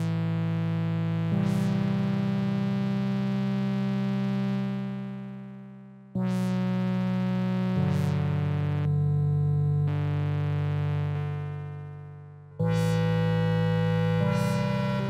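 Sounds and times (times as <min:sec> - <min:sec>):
synthesizer sustained chords: 0:06.2 - 0:15.0.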